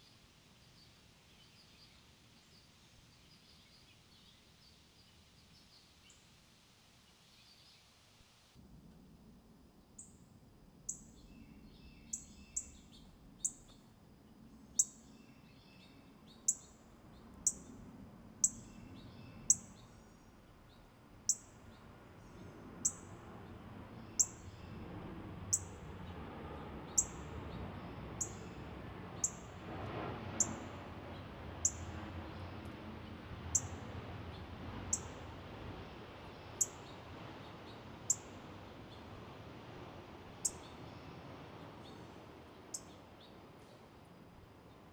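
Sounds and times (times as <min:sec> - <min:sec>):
soft lower bird chirps: 0:00.0 - 0:06.3, 0:07.0 - 0:08.0, 0:09.8 - 0:17.8, 0:18.4 - 0:23.1, 0:24.0 - 0:24.8, 0:36.3 - 0:38.3, 0:40.4 - 0:42.1, 0:42.7 - 0:43.9
faint low rumble: 0:08.6 - 0:44.9.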